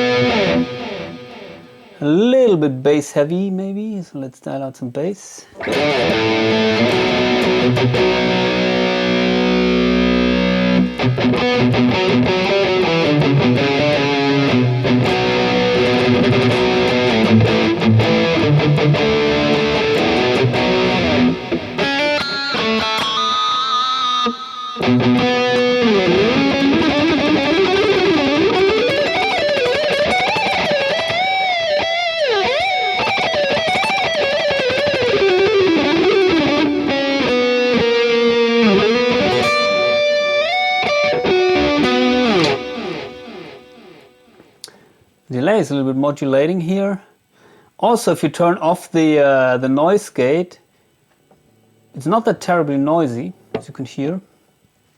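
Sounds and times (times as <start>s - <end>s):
distorted electric guitar: 0.0s - 2.1s, 5.6s - 44.8s.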